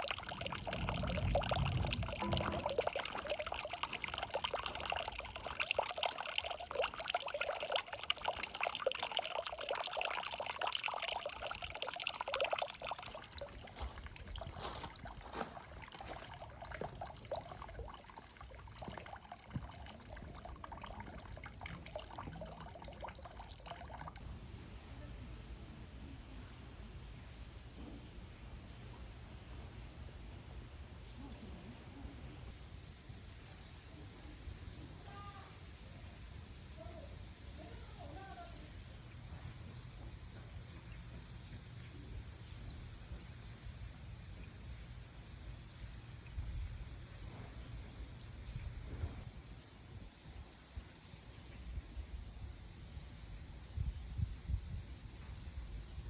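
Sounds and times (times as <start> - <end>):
water drips: 0.0 - 24.2, 39.0 - 53.0
water pouring and trickling: 0.0 - 24.3, 37.3 - 56.0.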